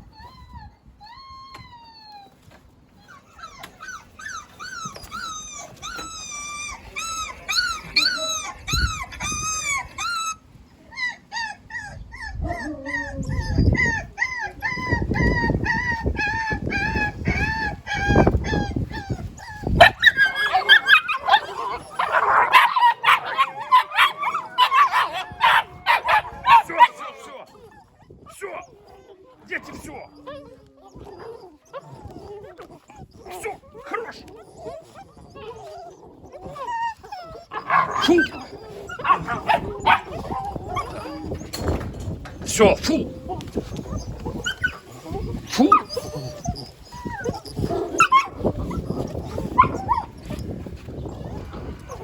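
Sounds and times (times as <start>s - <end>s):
puppies whining and yelping: 0.0s - 52.0s
dog barks: 19.8s - 27.3s, 37.6s - 38.4s, 39.0s - 41.0s.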